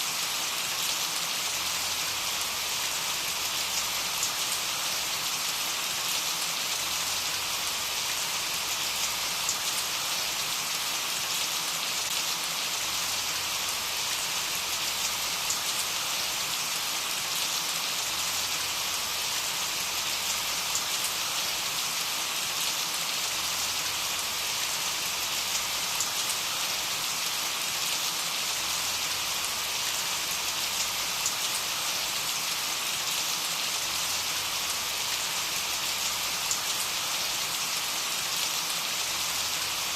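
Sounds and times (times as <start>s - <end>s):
steady rain hiss: 0.0s - 39.9s.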